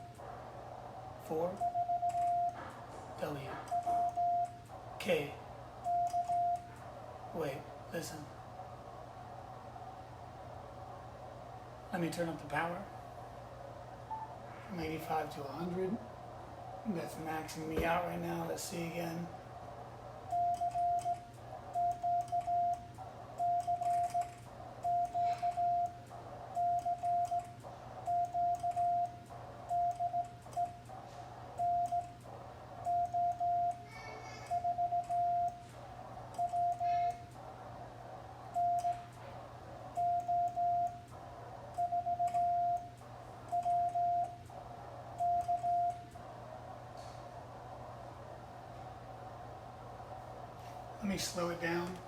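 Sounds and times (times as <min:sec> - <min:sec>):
morse code beeps: 0:01.5 - 0:02.6, 0:03.6 - 0:04.6, 0:05.8 - 0:06.7, 0:20.3 - 0:30.8, 0:31.6 - 0:32.2, 0:32.8 - 0:33.9, 0:34.5 - 0:35.7, 0:36.4 - 0:37.2, 0:38.5 - 0:39.1, 0:39.9 - 0:41.0, 0:41.8 - 0:44.4, 0:45.2 - 0:46.1.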